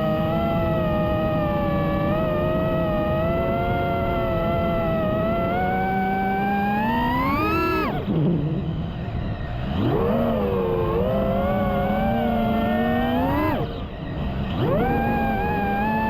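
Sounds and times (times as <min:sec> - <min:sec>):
quadcopter motors whining: 0:00.0 - 0:16.0.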